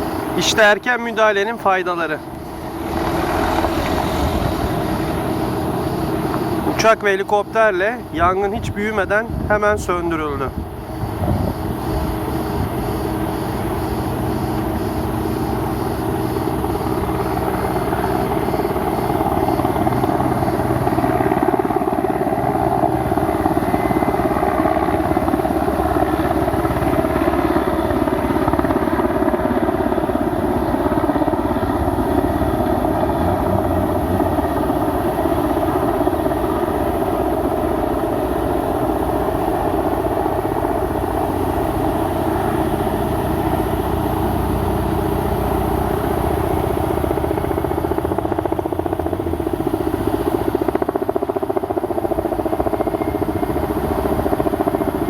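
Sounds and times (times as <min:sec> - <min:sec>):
engine humming: 0:01.8 - 0:06.8, 0:30.5 - 0:38.3.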